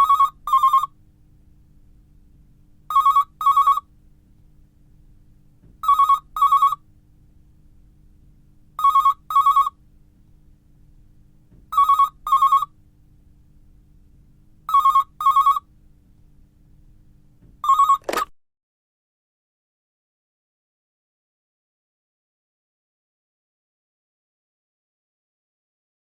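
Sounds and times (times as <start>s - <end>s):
telephone ringing: 0.0s - 0.9s, 2.9s - 3.8s, 5.8s - 6.8s, 8.8s - 9.7s, 11.7s - 12.7s, 14.7s - 15.6s, 17.6s - 18.3s
sharp click: 18.0s - 18.3s.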